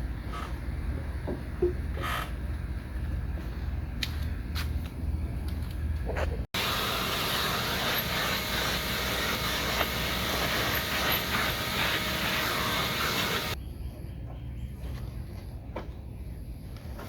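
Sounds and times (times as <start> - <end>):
vacuum cleaner running: 6.6 - 13.6.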